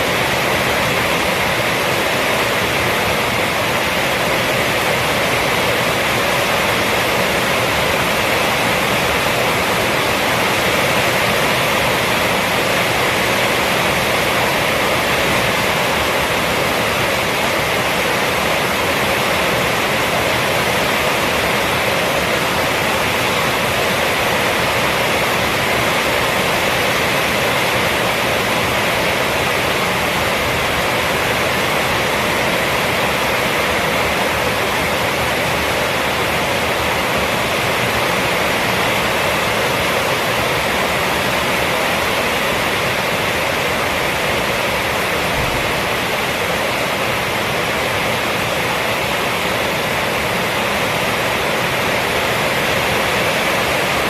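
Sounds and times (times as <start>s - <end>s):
rain on a roof: 0.0s - 54.0s.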